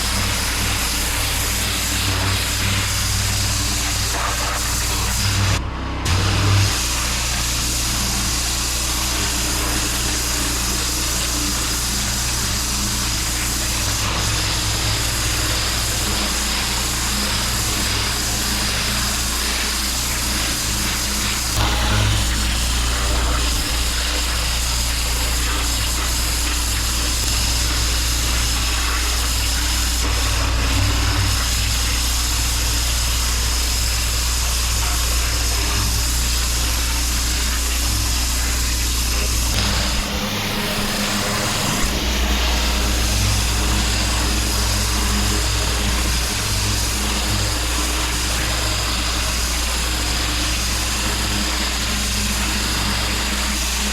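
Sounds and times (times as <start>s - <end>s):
high-pressure water spray hissing: 0.0s - 53.9s
pressure washer engine running: 0.0s - 53.9s.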